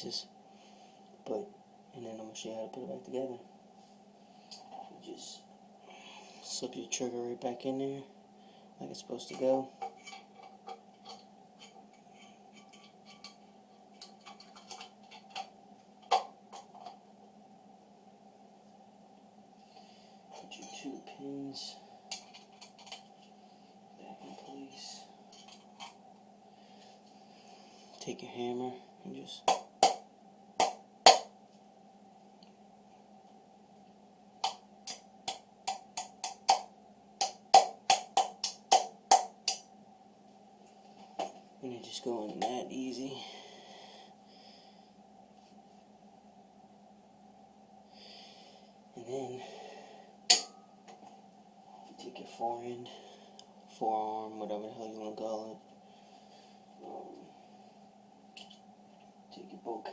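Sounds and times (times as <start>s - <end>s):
faint steady hum: 0.0s - 59.9s
hammer tapping metal pins: 34.4s - 39.6s.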